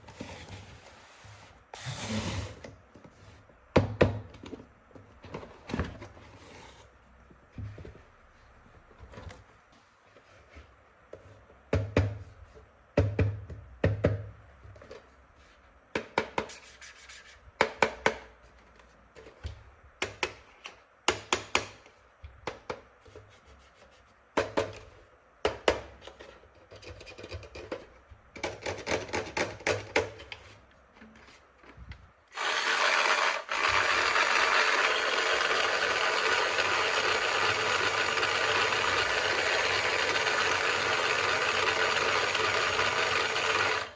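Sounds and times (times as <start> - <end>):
toy power tool buzzing: 32.3 - 43.9.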